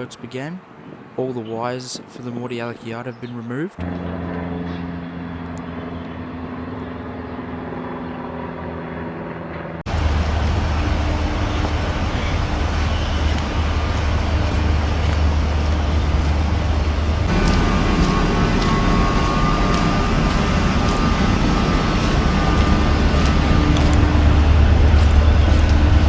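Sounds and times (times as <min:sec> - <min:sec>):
outdoor vehicle rumble: 0:03.8 - 0:26.0
vehicle engine hum: 0:03.8 - 0:26.0.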